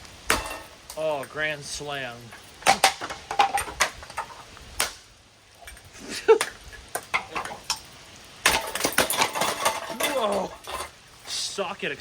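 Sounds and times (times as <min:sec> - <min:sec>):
metal parts knocking and clinking: 0:08.4 - 0:10.9.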